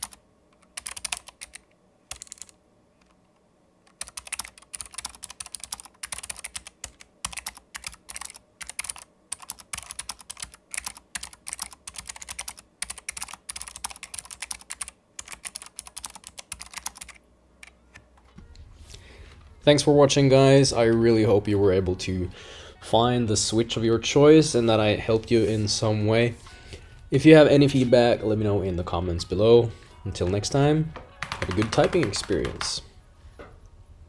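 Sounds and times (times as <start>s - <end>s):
fast typing on a keyboard: 0.0s - 2.6s, 3.9s - 17.8s, 31.1s - 32.9s.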